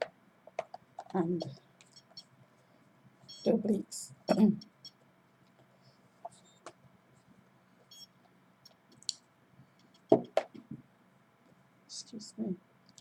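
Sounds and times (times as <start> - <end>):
sharp knocks: 10.1 - 10.8.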